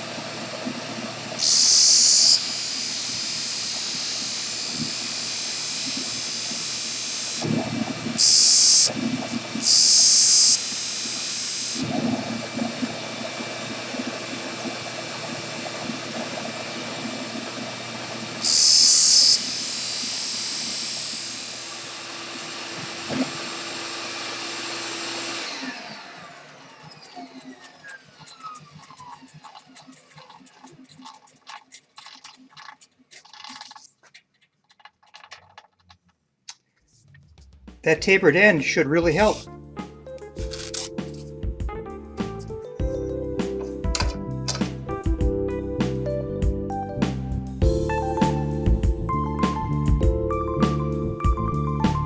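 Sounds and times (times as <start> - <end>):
disc sander motor running: 0.0 - 31.5, 38.2 - 39.4.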